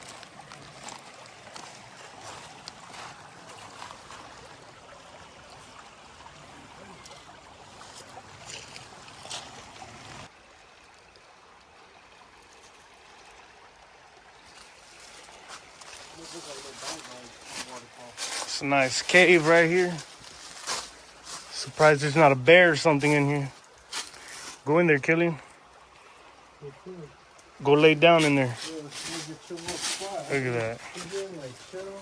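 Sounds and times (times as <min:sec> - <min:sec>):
footsteps on hiking trail: 0:00.0 - 0:05.8, 0:07.0 - 0:10.2, 0:14.4 - 0:24.7, 0:27.8 - 0:32.0
creek rushing: 0:00.0 - 0:32.0.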